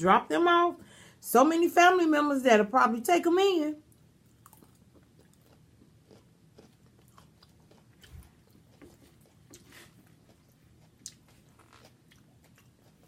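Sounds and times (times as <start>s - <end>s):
chewing close to microphone: 4.3s - 13.0s.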